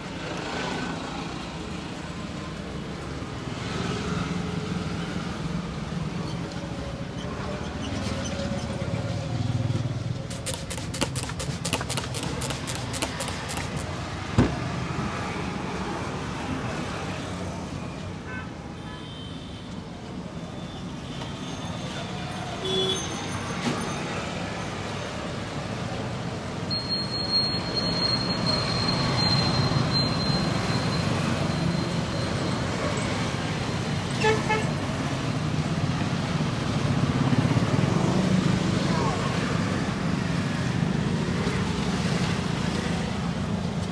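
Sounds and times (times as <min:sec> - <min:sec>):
passing vehicles: 0:27.6 - 0:43.9.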